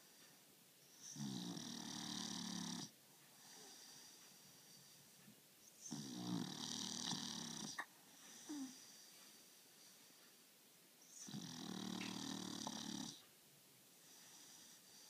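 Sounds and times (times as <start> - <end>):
dog snoring: 0.9 - 4.1, 5.8 - 8.9, 11.1 - 13.2
faint dog breathing: 3.2 - 11.4.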